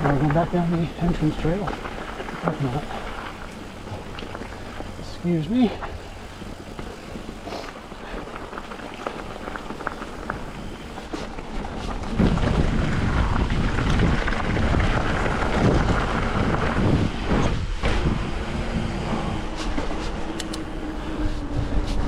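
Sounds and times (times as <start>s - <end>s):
bike rattling: 0.0s - 22.0s
bike tyres rumbling on dirt: 0.0s - 22.0s
wind buffeting microphone: 0.0s - 22.0s.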